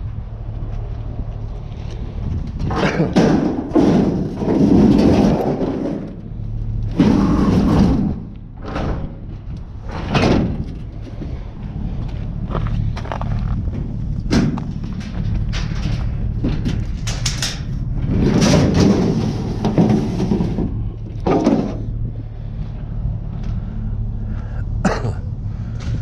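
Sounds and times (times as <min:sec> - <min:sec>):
vehicle drone: 0:00.0 - 0:26.0
loud thuds and bangs: 0:02.7 - 0:06.1, 0:06.9 - 0:10.9, 0:13.7 - 0:17.1.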